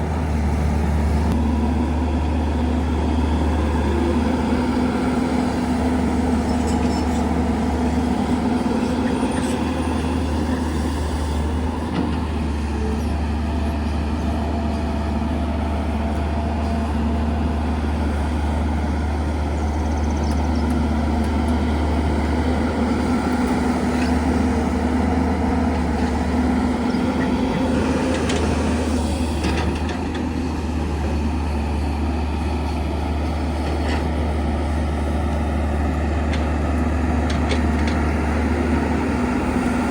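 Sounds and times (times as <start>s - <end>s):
heavy diesel machinery drone: 0.0s - 39.9s.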